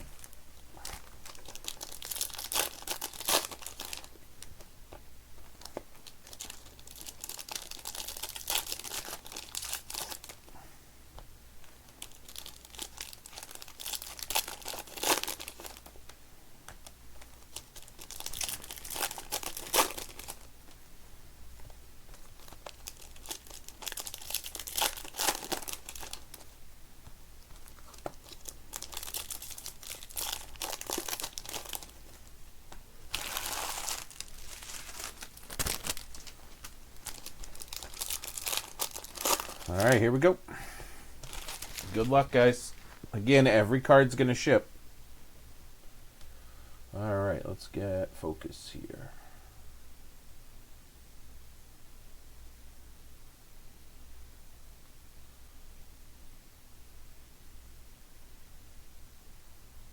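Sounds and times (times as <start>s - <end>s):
plastic wrapping crinkling and tearing: 0.0s - 4.7s, 5.5s - 10.5s, 11.9s - 16.2s, 16.8s - 20.5s, 22.1s - 26.5s, 27.4s - 32.3s, 33.1s - 40.4s, 41.2s - 43.4s.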